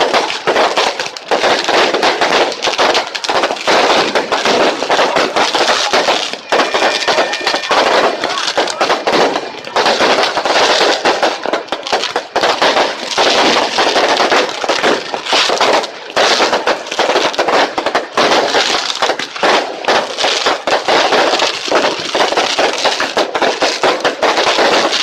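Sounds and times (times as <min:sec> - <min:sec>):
fireworks crackling and popping: 0:00.0 - 0:25.0.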